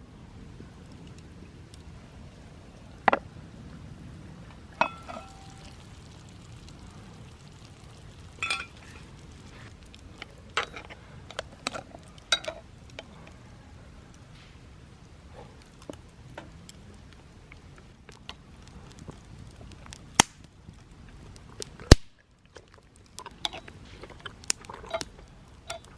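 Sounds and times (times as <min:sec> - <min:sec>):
low background noise: 0:00.0 - 0:25.9
cookware clinks and knocks: 0:04.8 - 0:05.5, 0:08.4 - 0:08.8.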